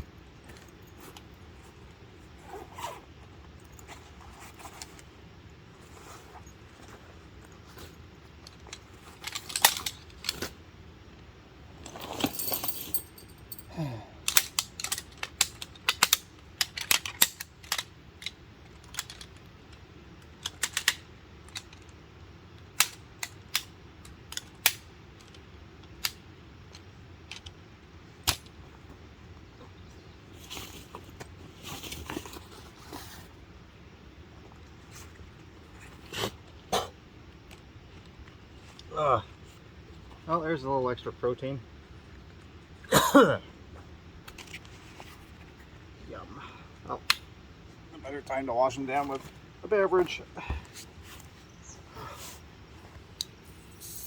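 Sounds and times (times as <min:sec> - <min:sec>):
rustling: 0:00.4 - 0:10.6, 0:11.8 - 0:13.7, 0:30.2 - 0:33.4.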